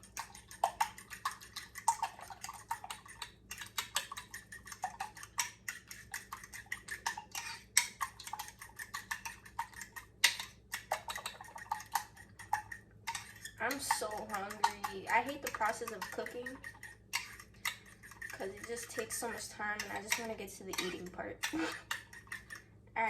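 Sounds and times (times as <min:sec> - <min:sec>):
fork beating eggs in a bowl: 0:00.0 - 0:22.8.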